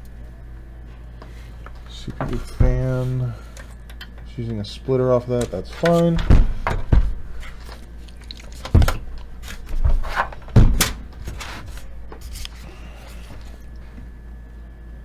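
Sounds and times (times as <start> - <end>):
faint rustling: 5.3 - 14.2.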